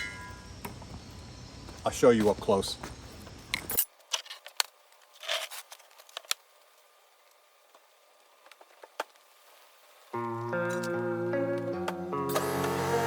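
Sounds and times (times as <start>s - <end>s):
background music: 10.2s - 13.0s.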